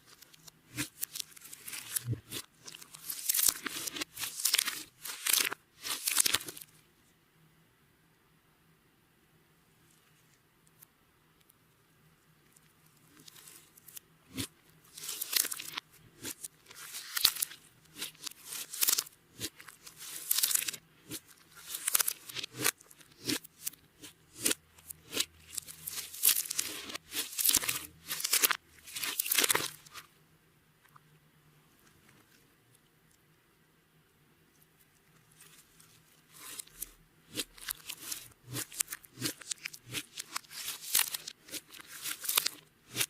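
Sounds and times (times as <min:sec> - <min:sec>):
slime squishing: 0:00.0 - 0:06.7, 0:13.0 - 0:30.0, 0:35.4 - 0:43.0.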